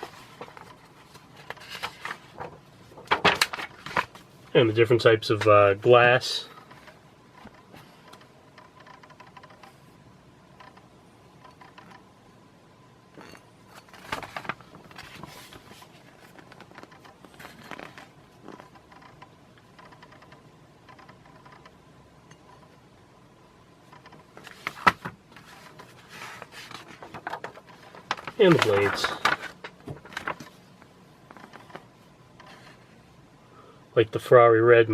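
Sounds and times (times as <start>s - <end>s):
paper pages rustling: 0.0s - 4.3s, 13.9s - 18.7s, 24.3s - 30.7s
faint steady hum: 0.0s - 34.9s.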